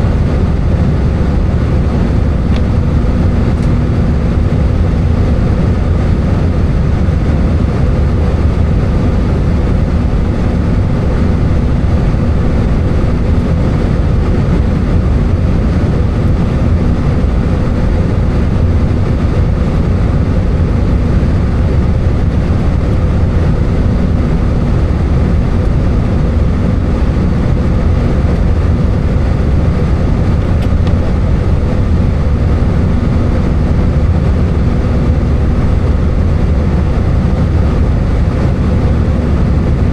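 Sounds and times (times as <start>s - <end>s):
airplane cabin engine drone: 0.0s - 39.9s.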